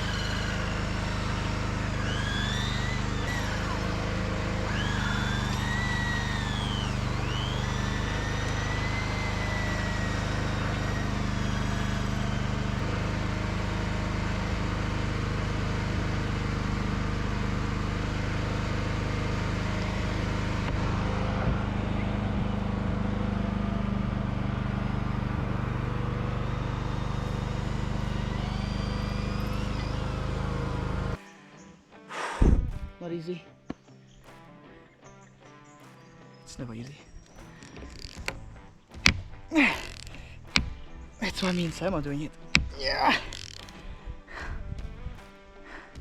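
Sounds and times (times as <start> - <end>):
high rising and falling whistles: 0.0 - 12.8
engine running steadily: 0.0 - 31.2.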